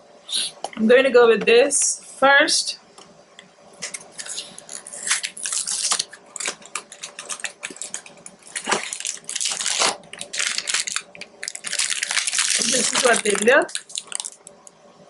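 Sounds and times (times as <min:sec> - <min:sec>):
plastic packaging crinkling and tearing: 0:03.8 - 0:14.6.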